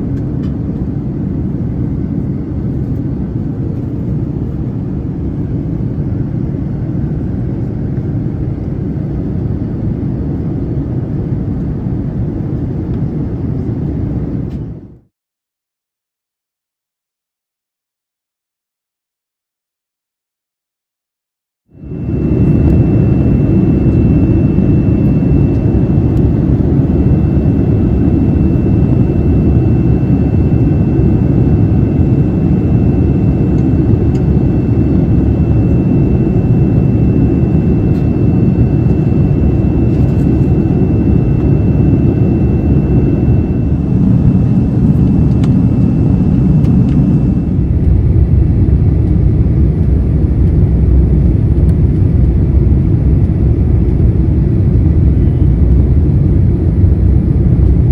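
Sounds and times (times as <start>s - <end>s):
aircraft cabin engine rumble: 0.0s - 15.0s, 21.8s - 57.9s.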